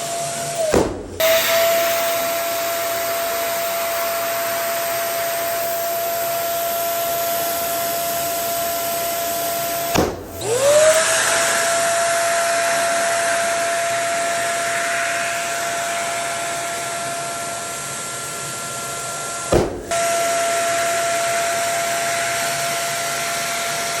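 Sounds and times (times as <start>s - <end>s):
electric blower motor whining: 0.0s - 24.0s
thump: 0.7s - 1.2s, 9.9s - 10.4s, 19.5s - 20.0s.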